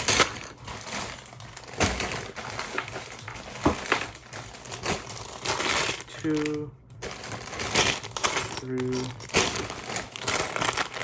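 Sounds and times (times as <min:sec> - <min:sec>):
plastic bags crinkling: 0:00.0 - 0:11.0
plastic pieces rattling: 0:00.0 - 0:11.0.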